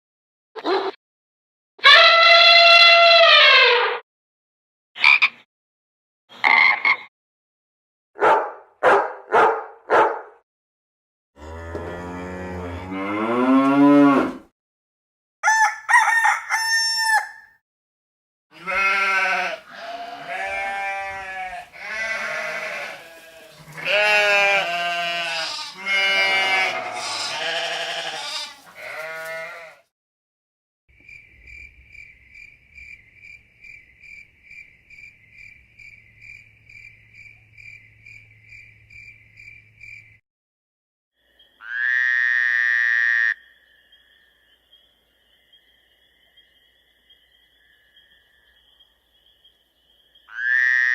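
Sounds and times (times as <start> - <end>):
animal bleating: 1.8 - 3.8, 18.5 - 29.9.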